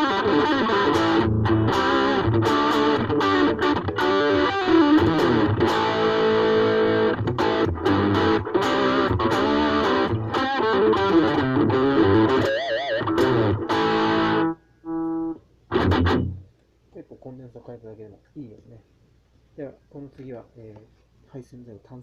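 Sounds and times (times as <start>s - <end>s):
electric guitar single notes: 0.0s - 16.5s.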